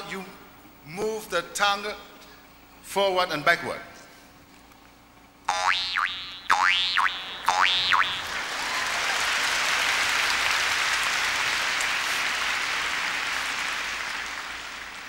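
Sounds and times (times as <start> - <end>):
audience applauding: 7.8 - 15.0.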